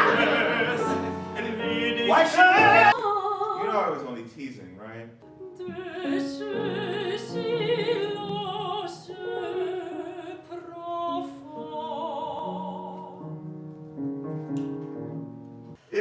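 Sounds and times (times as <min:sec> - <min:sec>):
held accompaniment notes: 0:00.0 - 0:03.0
operatic singing: 0:00.0 - 0:03.9.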